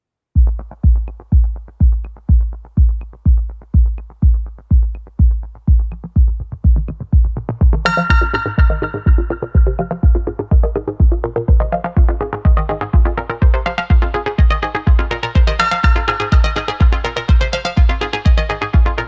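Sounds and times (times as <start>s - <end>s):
kick drum beat: 0.4s - 19.0s
synth layers: 7.8s - 19.0s.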